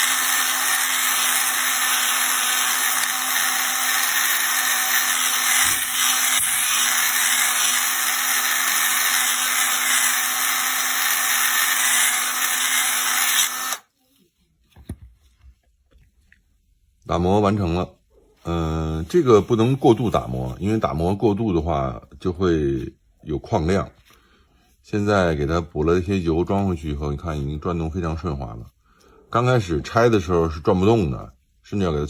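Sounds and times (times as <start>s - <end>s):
small power tool grinding: 0.0s - 13.9s.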